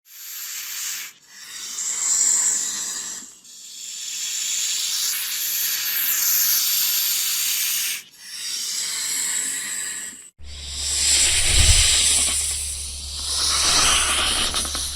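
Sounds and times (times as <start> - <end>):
snake hissing: 10.4 - 14.9.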